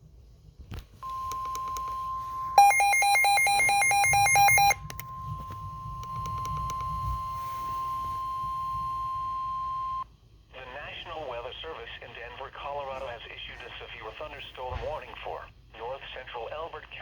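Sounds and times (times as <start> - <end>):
faint static clicks: 0.6 - 2.1, 2.9 - 10.0
lower pulsing beep: 1.0 - 10.0
steady high alarm beep: 1.0 - 10.0.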